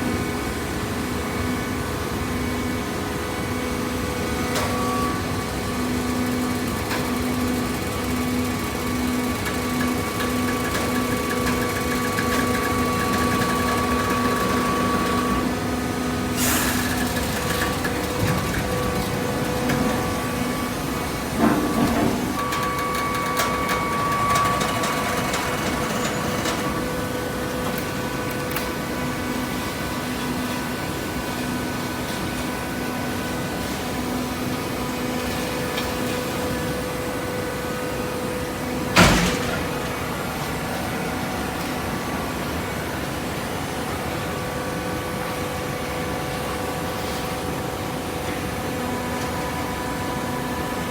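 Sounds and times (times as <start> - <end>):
baler machinery humming: 3.5 - 30.6
loud machine clank: 39.0 - 40.3.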